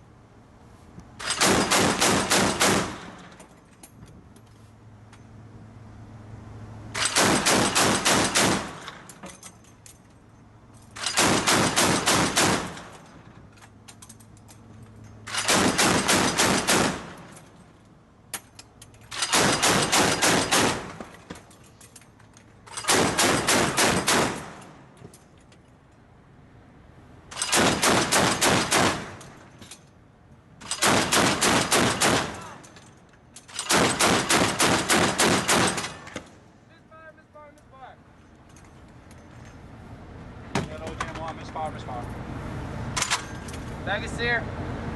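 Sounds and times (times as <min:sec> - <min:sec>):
chain gun firing bursts: 0:01.2 - 0:03.4, 0:07.0 - 0:09.2, 0:11.0 - 0:13.2, 0:15.3 - 0:17.5, 0:19.1 - 0:21.2, 0:22.7 - 0:24.8, 0:27.3 - 0:29.5, 0:30.6 - 0:32.8, 0:33.5 - 0:36.3.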